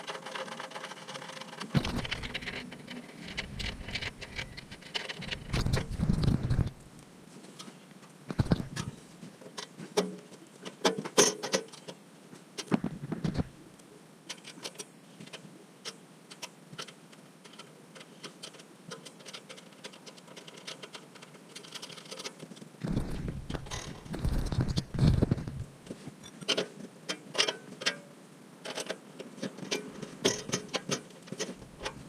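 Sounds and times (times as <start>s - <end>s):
metallic clicks and knocks of tools: 26.2s - 28.0s.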